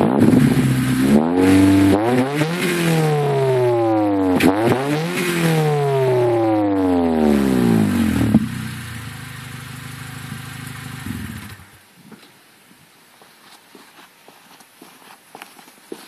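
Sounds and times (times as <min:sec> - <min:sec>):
car exhaust revving and idling: 0:00.0 - 0:11.8.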